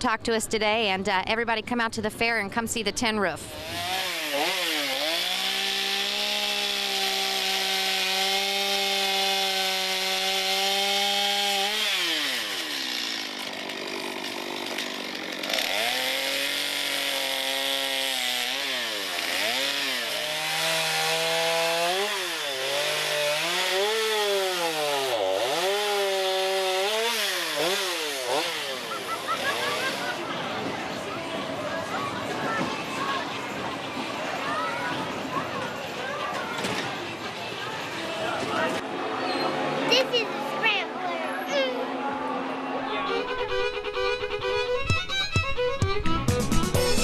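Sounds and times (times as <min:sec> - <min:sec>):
chainsaw revving: 0:03.5 - 0:30.3.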